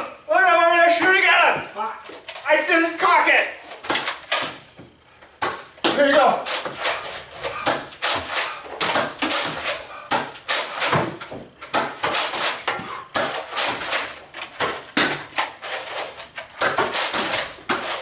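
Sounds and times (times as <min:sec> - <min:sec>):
knocking and clattering indoors: 0:03.7 - 0:18.0.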